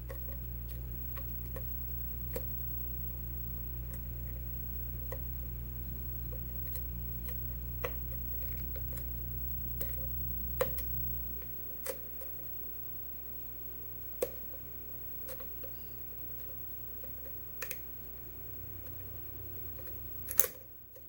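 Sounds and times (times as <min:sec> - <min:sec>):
steady low hum: 0:00.0 - 0:21.0
lock pick clicks: 0:20.3 - 0:20.6.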